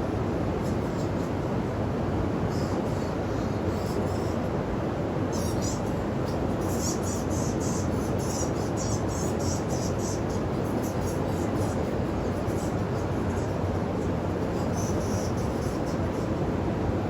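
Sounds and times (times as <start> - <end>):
bats squeaking: 5.4 - 13.8, 14.6 - 16.2.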